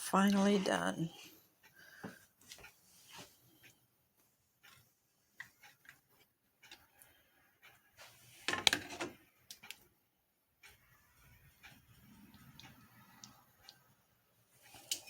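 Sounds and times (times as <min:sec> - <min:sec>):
kitchenware clicks and knocks: 0:08.5 - 0:09.2.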